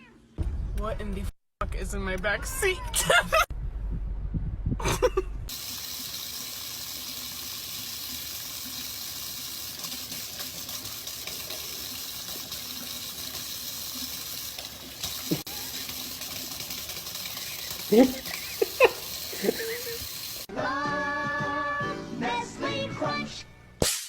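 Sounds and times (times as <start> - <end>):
water running from a tap: 5.5 - 20.5.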